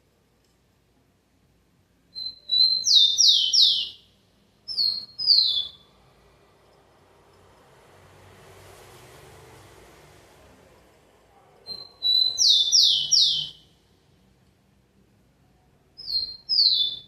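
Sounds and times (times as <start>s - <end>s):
sparrow whistling song: 2.1s - 5.8s, 11.7s - 13.7s, 16.0s - 17.0s.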